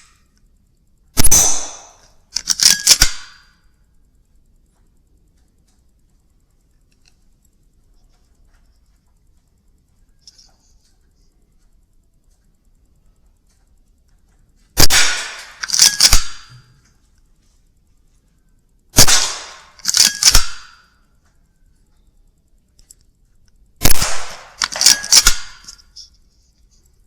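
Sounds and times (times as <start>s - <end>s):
metallic clicks: 0.0s - 3.7s, 8.6s - 17.3s, 19.0s - 22.0s, 22.6s - 27.0s
air rifle shot crack: 1.2s - 2.0s, 14.8s - 16.5s, 19.0s - 20.8s, 23.8s - 25.6s.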